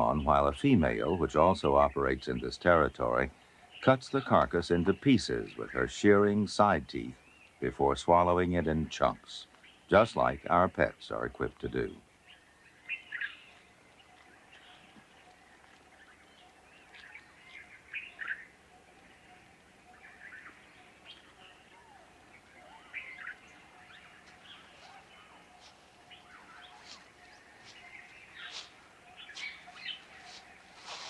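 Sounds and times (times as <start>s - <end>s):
faint forest background: 0.0s - 31.0s
wild birds chirping: 0.0s - 31.0s.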